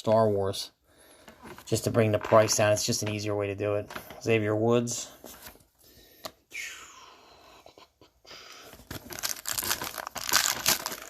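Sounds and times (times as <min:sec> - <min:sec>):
plastic crinkling and rustling: 0:08.7 - 0:11.0.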